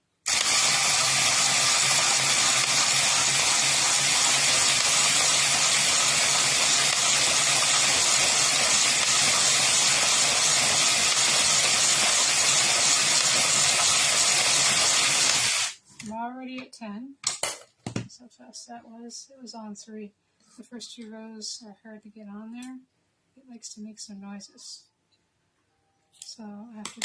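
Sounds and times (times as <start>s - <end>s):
drill driving knitting machine whirr: 0.0s - 15.8s.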